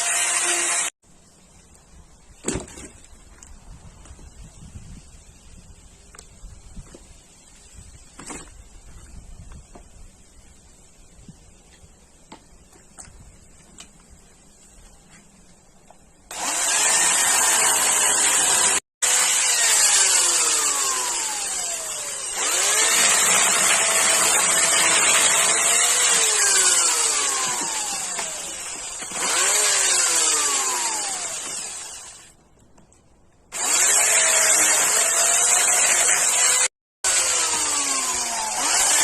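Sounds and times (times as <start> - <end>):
chainsaw cutting wood: 0.0 - 1.0, 16.3 - 32.4, 33.5 - 39.0.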